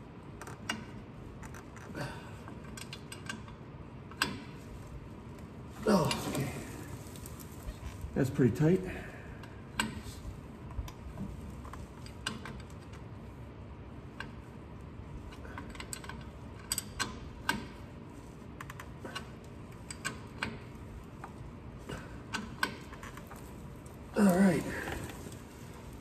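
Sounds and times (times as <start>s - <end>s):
hand wrench clicking on bolts: 22.3s - 23.4s.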